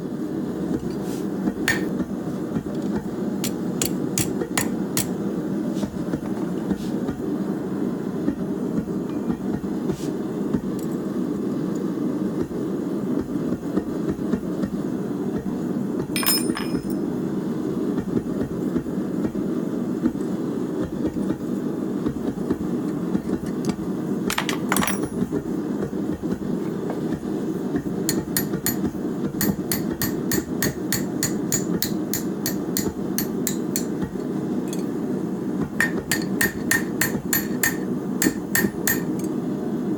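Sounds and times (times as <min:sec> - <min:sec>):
hammer striking steel on anvil: 0:01.7 - 0:01.9, 0:03.4 - 0:05.2, 0:16.2 - 0:17.0, 0:28.1 - 0:34.9, 0:35.8 - 0:39.3.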